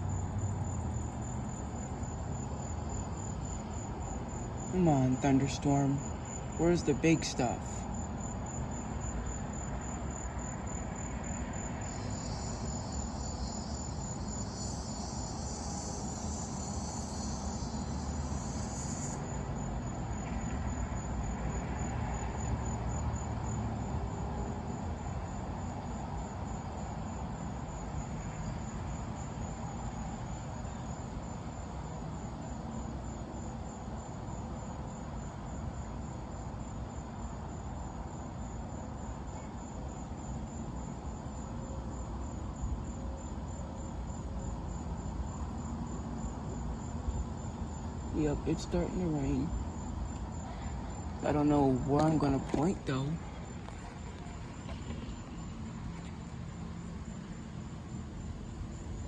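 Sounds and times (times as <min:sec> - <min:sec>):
crickets chirping: 0:00.0 - 0:59.0
insect buzzing: 0:07.9 - 0:21.1.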